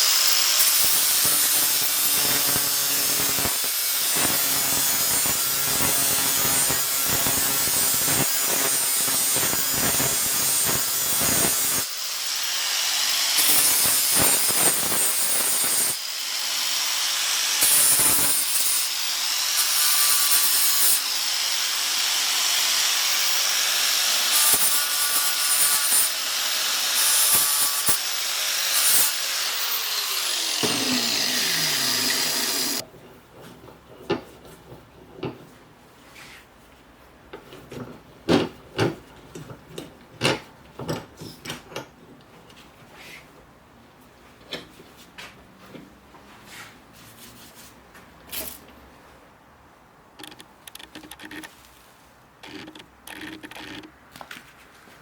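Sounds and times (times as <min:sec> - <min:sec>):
power tool spinning down: 0:09.5 - 0:32.8
electric power tool running: 0:26.8 - 0:32.8
taps and knocks of tools: 0:33.4 - 0:35.5, 0:37.4 - 0:42.6.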